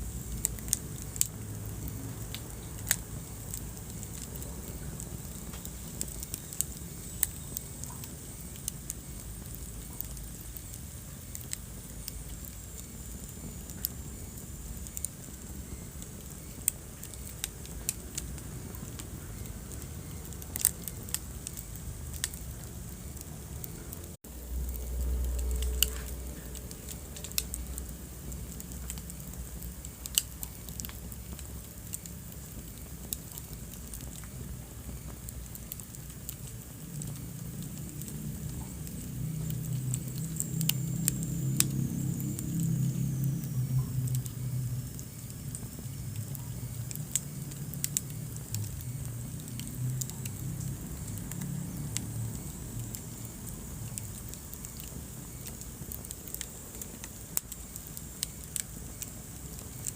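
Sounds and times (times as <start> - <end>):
fire crackling and popping: 0.0 - 59.9
wood fire rumble and hiss: 0.0 - 59.9.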